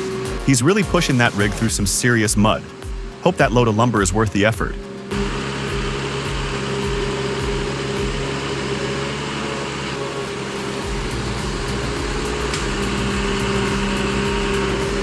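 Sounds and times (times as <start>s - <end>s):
heavy engine running under load: 0.0s - 15.0s.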